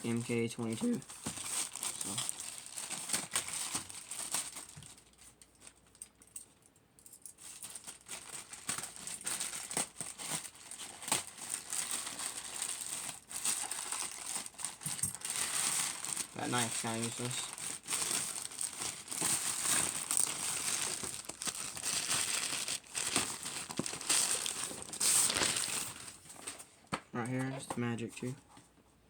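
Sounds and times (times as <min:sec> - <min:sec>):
packaging crinkling and rustling: 0:00.0 - 0:06.4, 0:07.3 - 0:26.7
packaging tearing: 0:01.1 - 0:04.9, 0:07.5 - 0:26.6.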